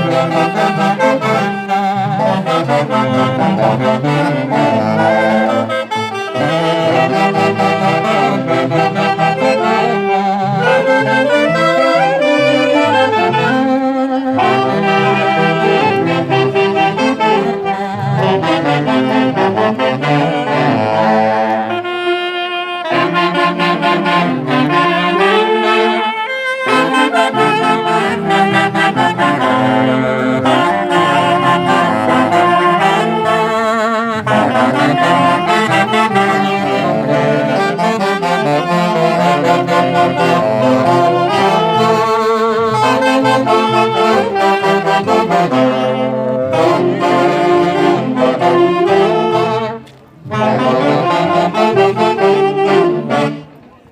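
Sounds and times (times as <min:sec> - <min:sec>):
band playing: 0:00.0 - 0:53.8
saxophones: 0:00.0 - 0:53.9
bass line: 0:26.7 - 0:53.4.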